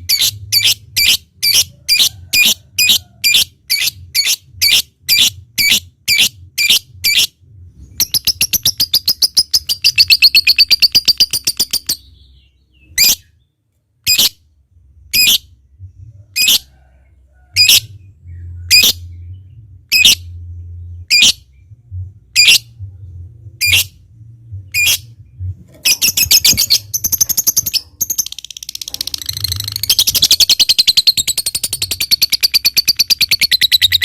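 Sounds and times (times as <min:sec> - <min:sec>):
lovebird rapid chattering: 0:25.8 - 0:34.0.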